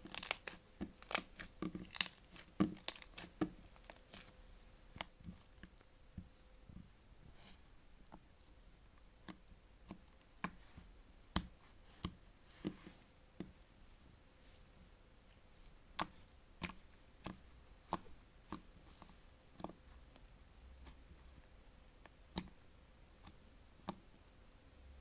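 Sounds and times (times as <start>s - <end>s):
slime clicking and popping: 0.0s - 4.3s.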